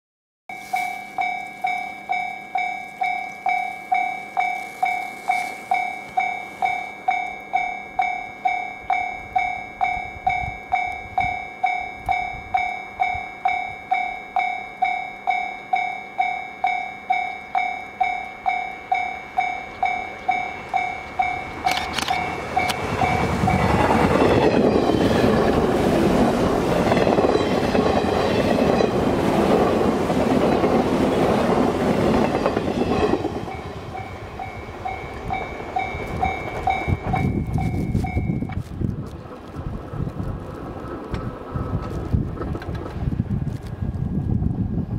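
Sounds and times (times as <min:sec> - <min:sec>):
level crossing bell ringing: 0:00.5 - 0:23.6, 0:33.4 - 0:38.5
train passing with wheel clatter: 0:00.5 - 0:44.9.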